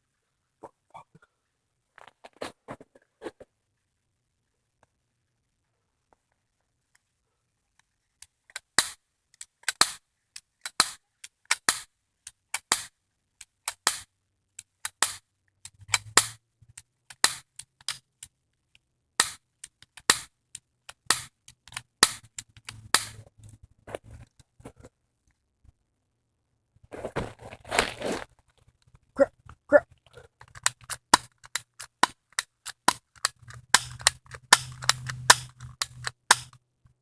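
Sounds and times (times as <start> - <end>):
rustling scramble: 26.8 - 32.0.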